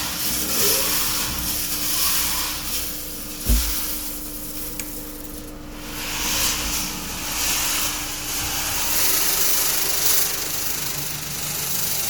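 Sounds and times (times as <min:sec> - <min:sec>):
machine humming and hissing: 0:00.0 - 0:12.0
dull thump: 0:03.4 - 0:03.8.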